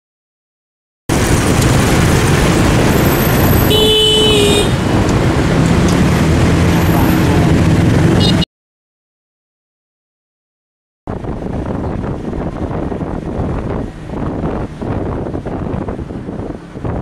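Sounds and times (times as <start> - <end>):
motorbike and street traffic: 1.1 - 8.5, 11.1 - 17.0
vehicle horn toot: 3.6 - 4.8, 8.2 - 8.5.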